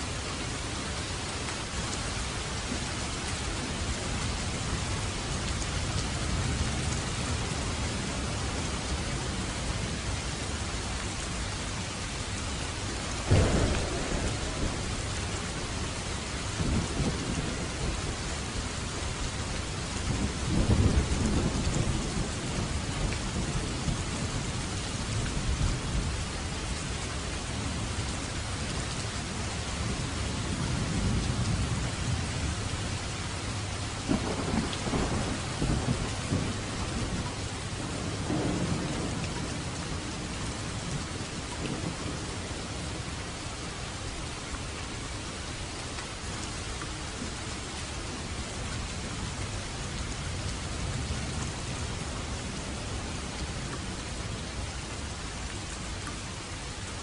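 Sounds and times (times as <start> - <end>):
heavy rain falling: 0.0 - 57.0
thunder rolling rumbles: 13.2 - 26.1, 34.0 - 41.0
thunder crack: 13.3 - 16.0.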